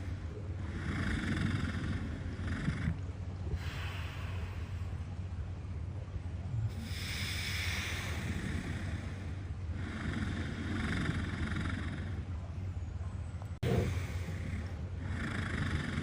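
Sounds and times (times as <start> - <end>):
walrus snoring: 0.0 - 5.0, 6.5 - 12.3, 13.6 - 16.0
low rumble: 1.6 - 10.4.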